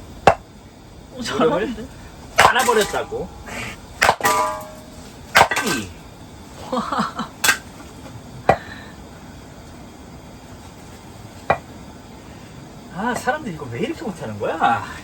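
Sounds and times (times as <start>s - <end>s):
firewood splitting knocks: 2.4s - 3.2s, 4.0s - 5.9s
short metallic ring: 4.2s - 5.8s.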